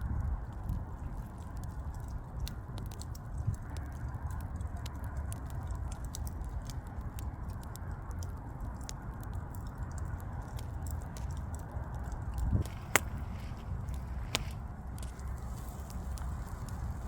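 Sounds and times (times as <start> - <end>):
burning logs crackling and popping: 0.0 - 17.0
fire rumbling: 0.0 - 17.0.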